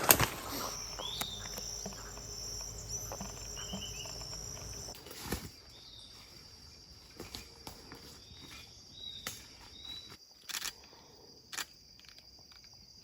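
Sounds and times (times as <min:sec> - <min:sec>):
bird calls: 0:00.0 - 0:06.4
insects singing: 0:00.0 - 0:10.2.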